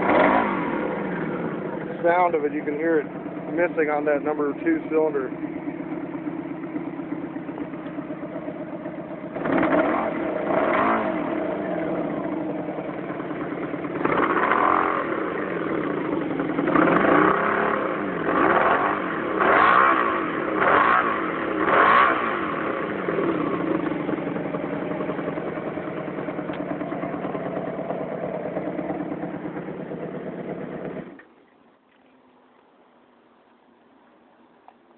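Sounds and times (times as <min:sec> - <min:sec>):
motorcycle engine idling and revving: 0:00.0 - 0:31.4.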